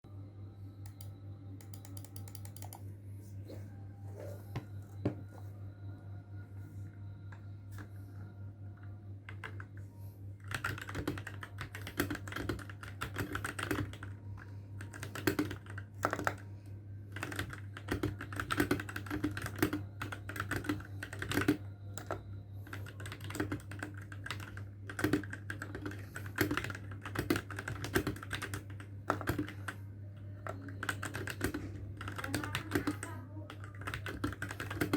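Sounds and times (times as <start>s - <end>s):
steady low hum: 0.0s - 34.9s
mechanical keyboard typing: 0.9s - 2.8s, 10.4s - 14.1s, 14.8s - 16.4s, 17.1s - 29.8s, 30.4s - 34.9s.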